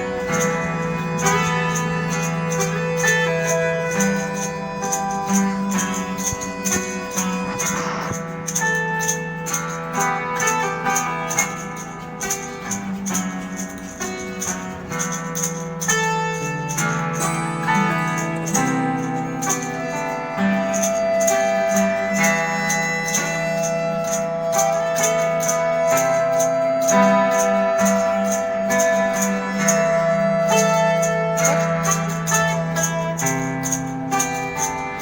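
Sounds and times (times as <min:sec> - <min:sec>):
bass notes: 0:00.0 - 0:10.0
guitar: 0:00.0 - 0:35.0
percussion beat: 0:00.0 - 0:35.0.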